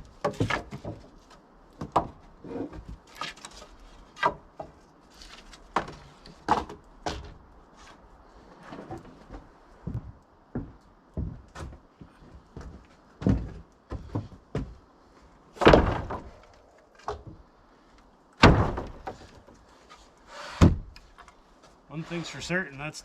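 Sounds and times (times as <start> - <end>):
wooden boards thudding: 0.0 - 1.2, 1.8 - 3.4, 5.7 - 7.4, 15.6 - 17.4, 18.4 - 19.6, 20.6 - 21.0.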